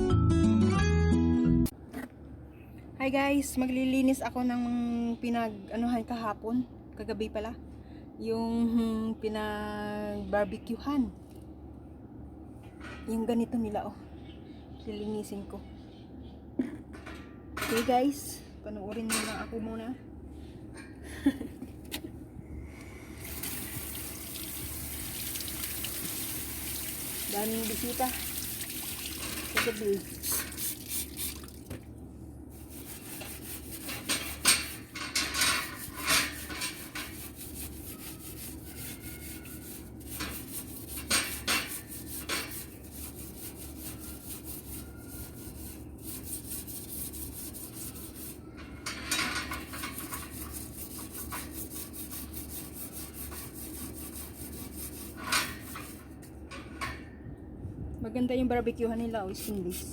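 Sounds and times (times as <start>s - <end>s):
steady low hum: 1.7s - 38.0s
scrubbing metal grill parts: 16.9s - 19.8s, 23.2s - 31.6s, 32.5s - 57.1s
metal clatter: 48.6s - 50.5s.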